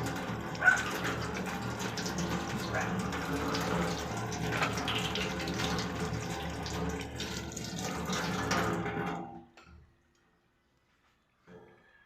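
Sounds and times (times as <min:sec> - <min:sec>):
water running from tap: 0:00.0 - 0:09.2.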